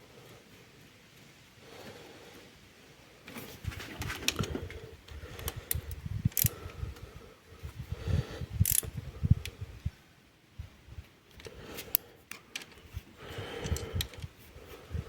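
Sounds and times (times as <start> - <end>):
clicks and taps of tools handled: 11.3 - 12.8.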